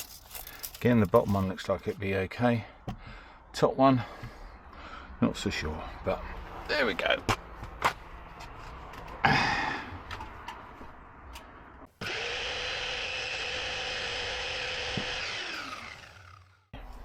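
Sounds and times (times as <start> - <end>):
electric power saw motor: 12.0 - 17.0.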